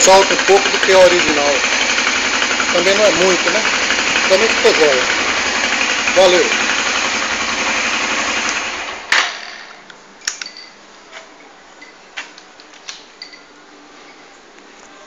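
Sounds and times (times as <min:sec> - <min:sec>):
motorcycle engine idling: 0:00.0 - 0:09.1.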